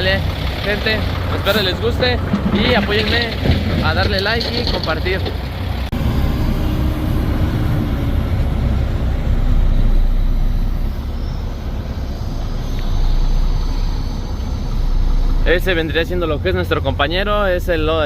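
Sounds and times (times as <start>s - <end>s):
truck engine and road rumble: 0.0s - 18.0s.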